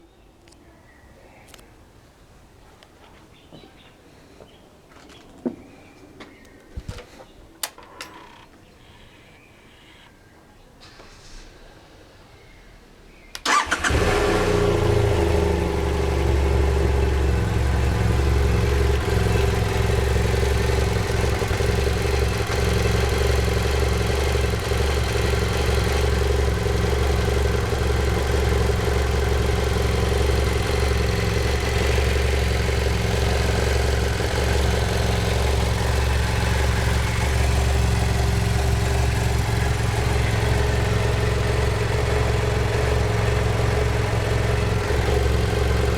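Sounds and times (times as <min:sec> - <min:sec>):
motorcycle engine starting and idling: 0:13.4 - 0:45.9.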